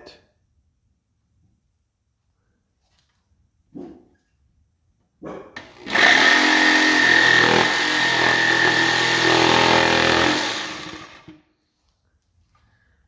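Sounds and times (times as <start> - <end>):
electric jigsaw cutting: 5.6 - 11.4.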